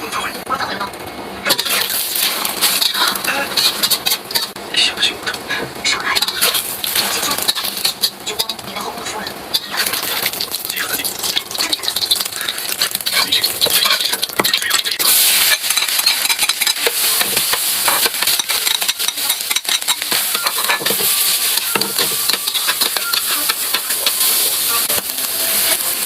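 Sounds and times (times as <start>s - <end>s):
food sizzling in a pan: 1.5s - 4.6s, 6.0s - 26.0s
utensil scraping a pan: 11.3s - 24.3s.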